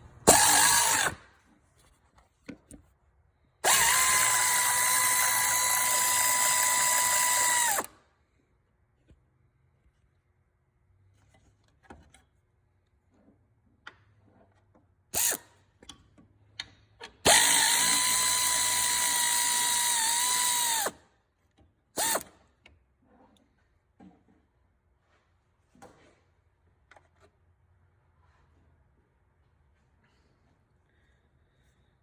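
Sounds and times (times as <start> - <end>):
power tool motor whirring: 0.3 - 1.2, 3.6 - 7.9, 17.3 - 21.0, 22.0 - 22.3.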